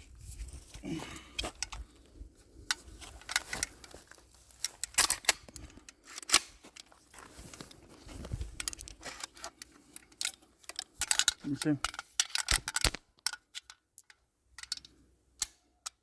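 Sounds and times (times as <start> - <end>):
gun metallic clicks and clacks: 4.7 - 6.9, 8.6 - 16.0.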